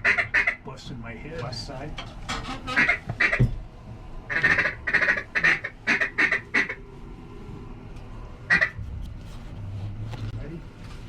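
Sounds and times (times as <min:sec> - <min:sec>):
duck quacking: 0:00.0 - 0:00.6, 0:02.7 - 0:03.4, 0:04.3 - 0:06.8, 0:08.5 - 0:08.8.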